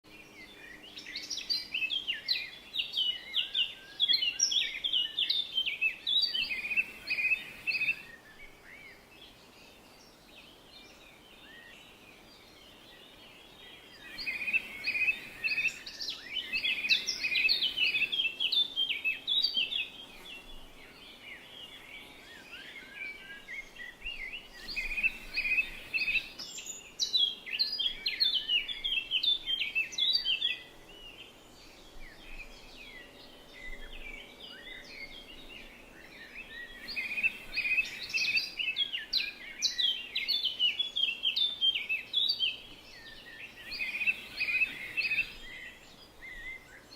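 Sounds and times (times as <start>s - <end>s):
birds chirping and trilling: 0.1s - 46.9s.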